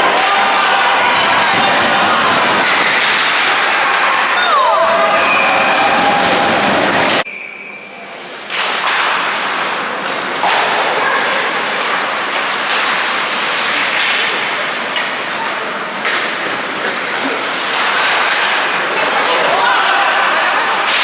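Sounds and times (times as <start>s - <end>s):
ice hockey arena noise: 0.0s - 21.0s
hockey sticks and puck knocking: 0.1s - 4.3s, 8.5s - 11.0s, 11.8s - 19.2s.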